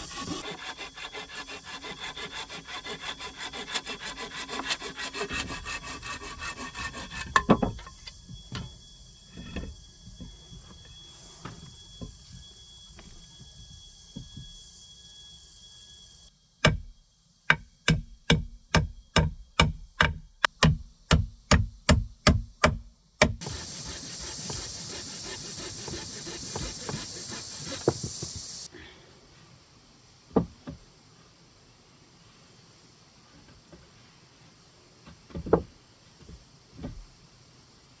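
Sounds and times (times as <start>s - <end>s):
steady hissing noise: 0.0s - 38.0s
tool knocking on wood: 7.2s - 8.7s, 16.6s - 28.7s.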